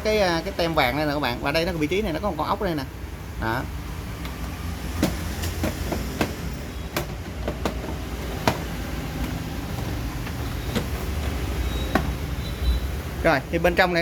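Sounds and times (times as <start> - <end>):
clicks and knocks on metal case: 5.0 - 11.4.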